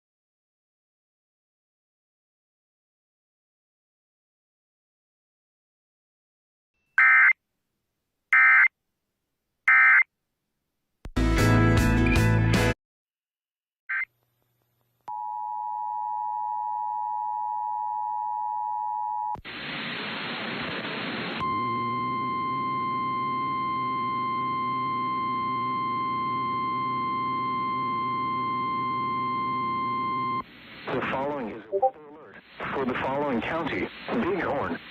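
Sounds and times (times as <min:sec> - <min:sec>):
static hiss: 0:19.4 - 0:21.4, 0:32.3 - 0:34.9
loud tone burst: 0:21.3 - 0:30.4
steady warning alarm tone: 0:21.4 - 0:30.4.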